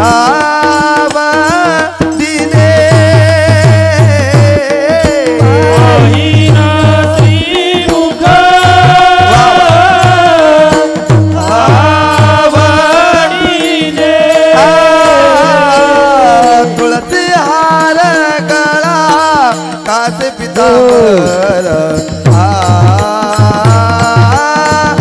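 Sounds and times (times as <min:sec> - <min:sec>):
person singing with vibrato: 0:00.0 - 0:25.0.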